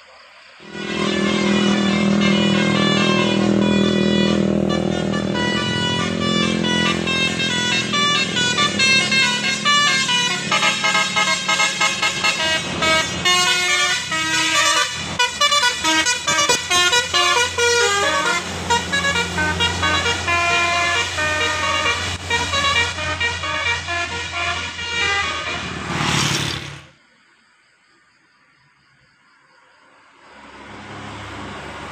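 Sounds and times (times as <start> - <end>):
bus horn playing a tune: 0.6 - 26.0.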